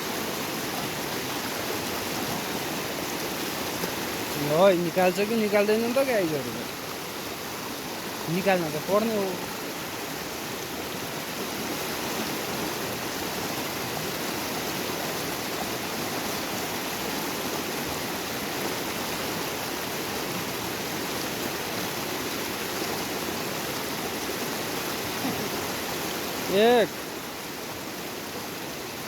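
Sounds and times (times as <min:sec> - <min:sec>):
river water rushing: 0:00.0 - 0:29.0.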